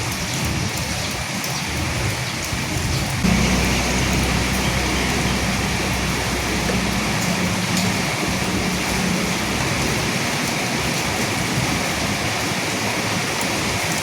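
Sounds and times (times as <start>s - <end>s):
rain on dead leaves: 0.0s - 14.0s
low thunder rumble: 2.8s - 13.8s.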